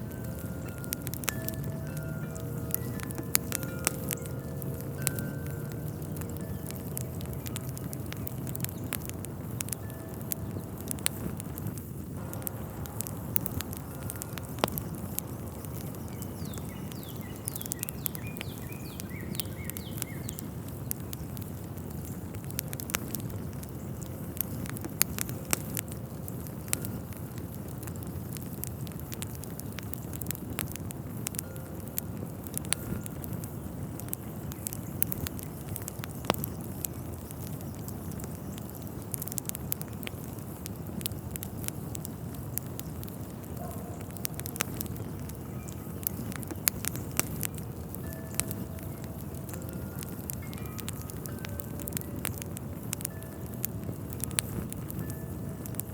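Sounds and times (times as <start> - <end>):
fire crackling and popping: 0.0 - 55.9
faint bird chirps: 14.0 - 21.4.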